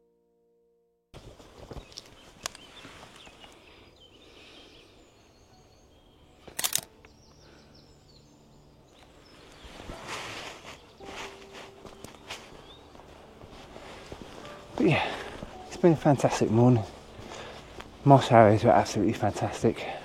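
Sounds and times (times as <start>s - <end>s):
outdoor background noise: 1.2s - 20.0s
bird chirps: 1.7s - 13.4s
piano music: 4.2s - 20.0s.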